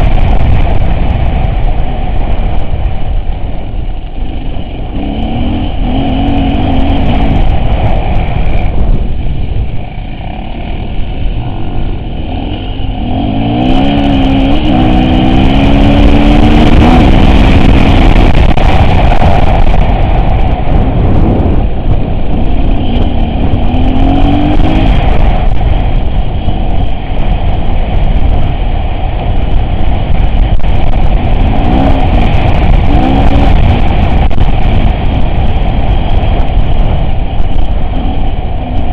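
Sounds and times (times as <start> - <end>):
off-road vehicle engine revving: 4.2 - 9.0, 10.2 - 20.1, 20.7 - 26.0, 30.8 - 35.4.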